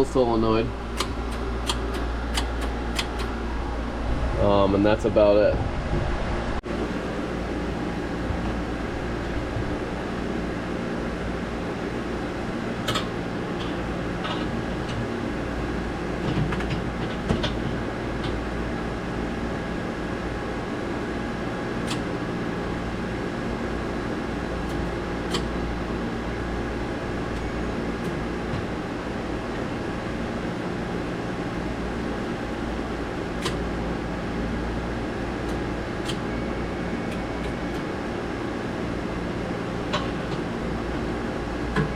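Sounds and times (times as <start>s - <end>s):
machinery drone and hum: 0.0s - 41.9s
sharp clicks: 0.9s - 3.3s.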